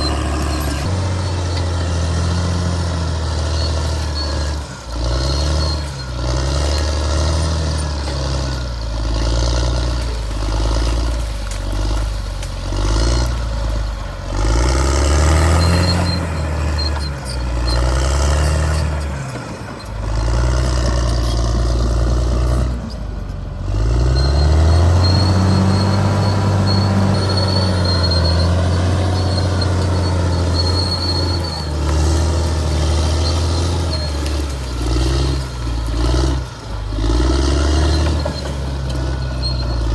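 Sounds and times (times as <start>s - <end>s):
bulldozer diesel engine under load: 0.0s - 39.9s.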